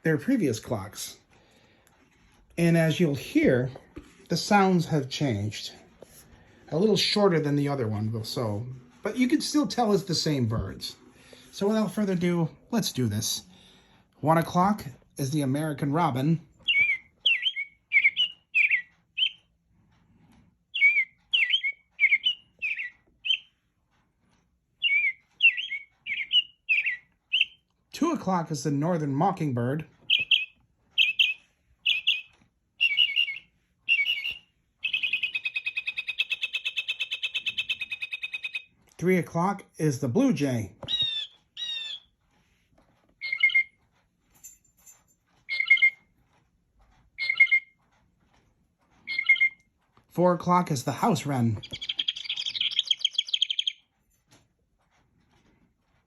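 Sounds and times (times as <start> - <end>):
recorded birdsong from clock speaker: 6.7 - 44.3, 45.2 - 56.0
blue jay calls from a speaker: 16.7 - 19.4, 20.8 - 23.4, 24.8 - 27.6, 30.1 - 38.7, 40.9 - 42.0, 43.2 - 43.7, 45.5 - 46.0, 47.2 - 47.7, 49.1 - 49.6, 51.6 - 53.8.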